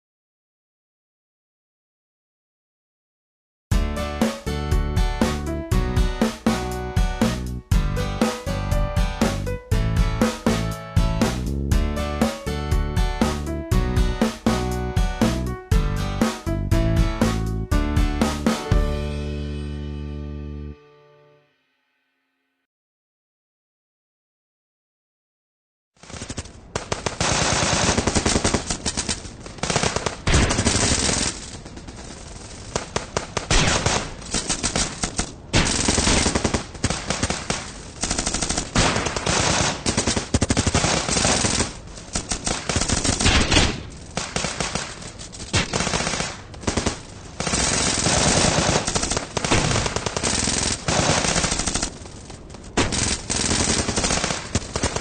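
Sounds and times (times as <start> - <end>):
automatic gunfire bursts: 32.8 - 44.9, 45.5 - 52.0, 52.8 - 55.0.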